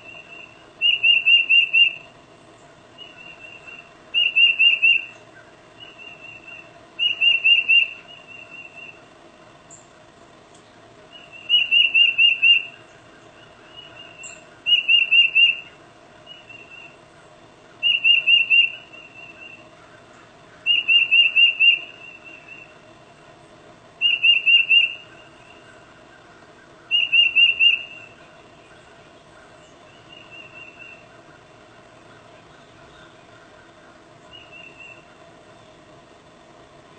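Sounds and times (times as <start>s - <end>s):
bird singing whistled song: 0.0s - 2.1s, 3.0s - 9.0s, 11.1s - 17.0s, 17.8s - 19.6s, 20.6s - 22.8s, 24.0s - 25.8s, 26.9s - 28.9s, 29.6s - 31.1s, 34.3s - 35.0s.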